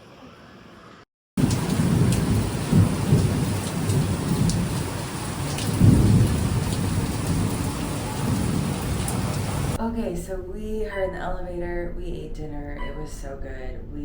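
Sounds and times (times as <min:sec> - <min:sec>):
heavy rain pouring: 0:01.4 - 0:09.8
low thunder rumbling: 0:01.4 - 0:09.8.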